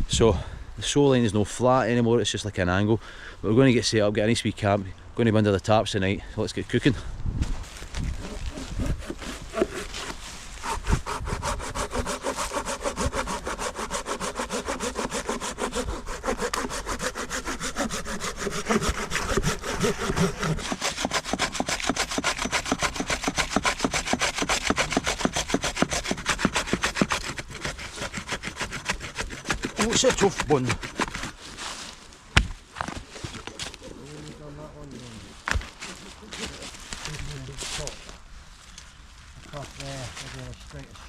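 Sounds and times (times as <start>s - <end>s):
hand saw cutting wood: 8.0s - 31.8s.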